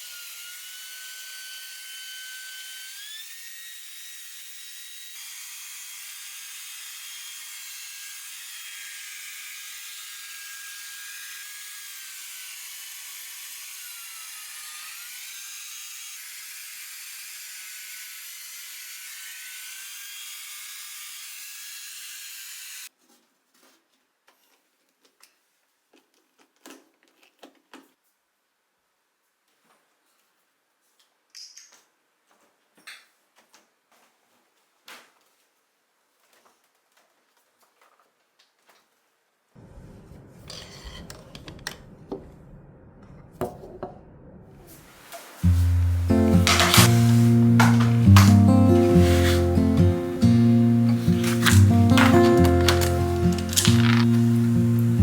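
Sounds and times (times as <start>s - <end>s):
stick vacuum motor whine: 45.5s - 55.0s.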